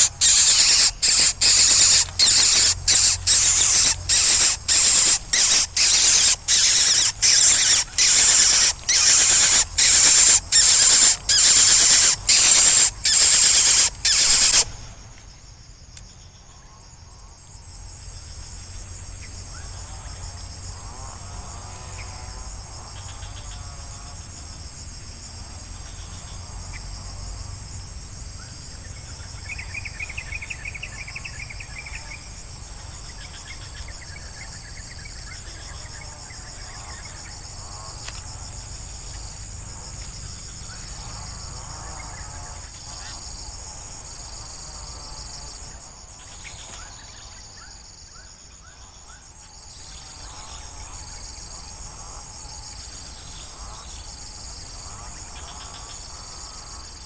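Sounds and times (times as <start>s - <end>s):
bird trills: 0.0s - 14.8s, 28.0s - 37.5s
insects whining: 0.0s - 57.0s.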